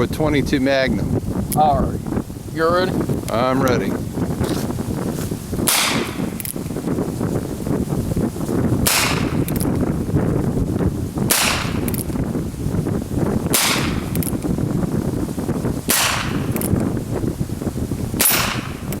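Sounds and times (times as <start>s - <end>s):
steady low rumble: 0.0s - 19.0s
revolver shots: 5.6s - 6.6s, 8.8s - 9.7s, 11.2s - 12.2s, 13.5s - 14.4s, 15.9s - 16.8s, 18.2s - 19.0s.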